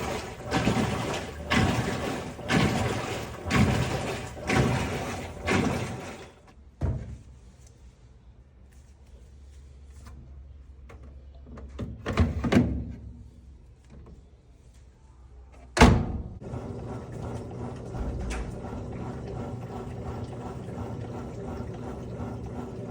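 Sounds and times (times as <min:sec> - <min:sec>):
washing machine filling with water: 0:00.0 - 0:06.4, 0:16.4 - 0:22.9.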